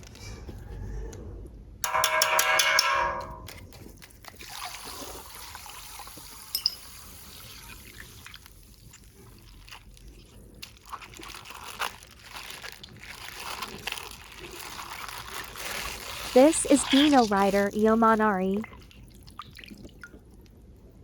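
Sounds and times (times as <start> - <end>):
water trickling and splashing: 3.7 - 10.0, 10.6 - 20.2.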